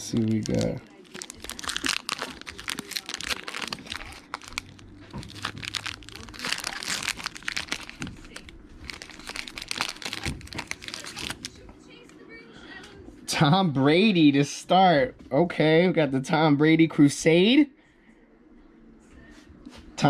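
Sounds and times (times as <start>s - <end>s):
foil wrapper crinkling: 0.0s - 11.6s.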